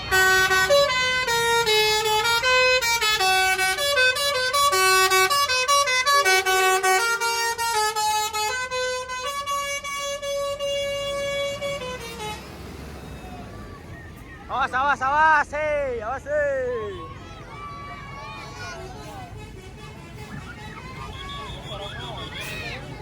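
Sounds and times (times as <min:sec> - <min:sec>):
bus musical horn melody: 0:00.0 - 0:14.0, 0:18.6 - 0:23.0.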